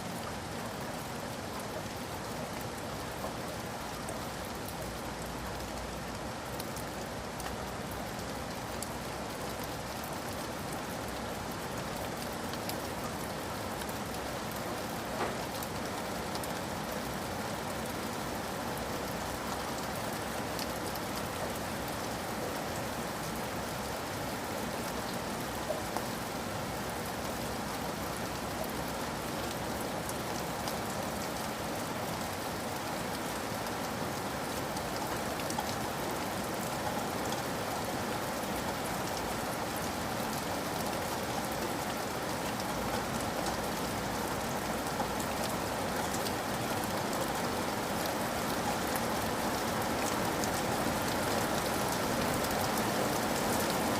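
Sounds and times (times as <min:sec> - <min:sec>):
steady rain: 0:00.0 - 0:53.9
raindrop ticks: 0:02.6 - 0:10.5.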